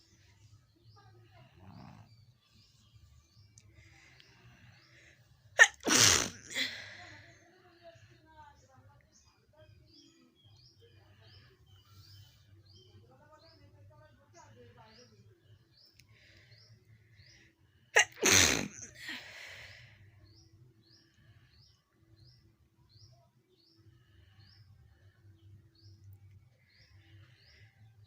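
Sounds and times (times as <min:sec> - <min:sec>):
person sneezing: 0:05.6 - 0:06.9, 0:18.0 - 0:19.1.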